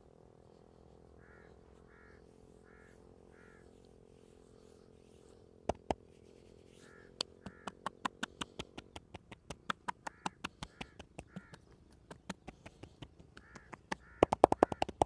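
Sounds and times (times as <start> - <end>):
faint steady hum: 0.0 - 15.0
crow cawing: 1.2 - 3.7, 6.8 - 7.8, 10.0 - 11.7, 13.4 - 14.9
sharp smacks: 5.7 - 6.0, 7.2 - 15.0.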